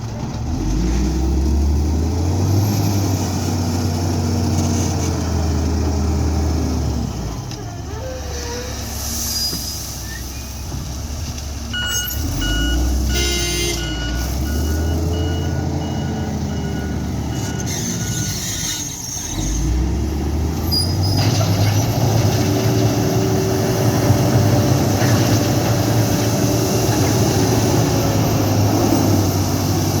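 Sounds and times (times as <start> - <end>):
diesel machinery engine: 0.0 - 30.0
reversing alarm beeping: 11.7 - 18.6.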